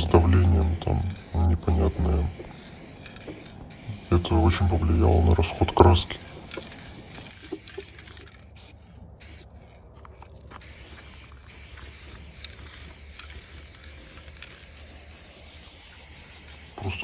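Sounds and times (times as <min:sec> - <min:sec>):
person complaining: 0:00.0 - 0:02.3
spray paint can hissing: 0:00.0 - 0:17.0.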